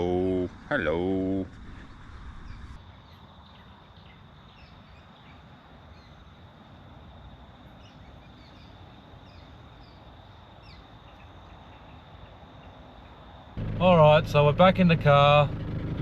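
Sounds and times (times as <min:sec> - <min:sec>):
insect drone: 0:00.0 - 0:15.0
bird chirps: 0:02.4 - 0:06.2, 0:07.8 - 0:13.2.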